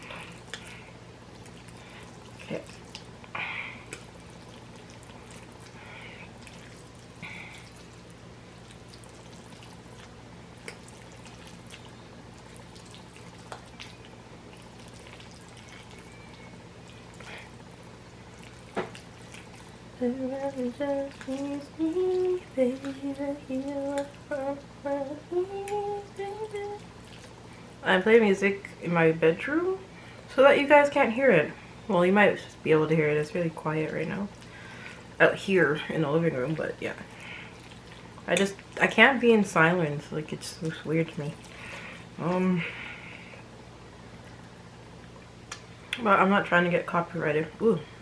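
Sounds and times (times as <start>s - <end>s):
low room hum: 0.0s - 48.0s
woman humming a tune: 20.0s - 26.8s.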